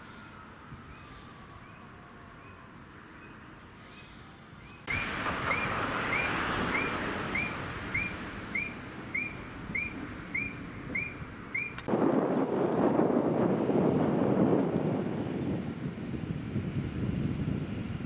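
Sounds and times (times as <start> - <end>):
rushing noise: 4.9 - 15.3.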